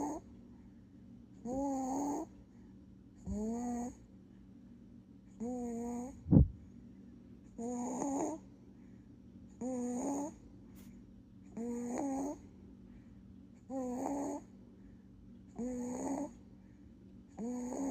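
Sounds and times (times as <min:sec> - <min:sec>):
baby snoring: 0:00.0 - 0:00.2, 0:01.4 - 0:02.3, 0:03.3 - 0:04.0, 0:05.4 - 0:06.2, 0:07.6 - 0:08.4, 0:09.6 - 0:10.4, 0:11.6 - 0:12.4, 0:13.7 - 0:14.5, 0:15.6 - 0:16.4, 0:17.4 - 0:17.9.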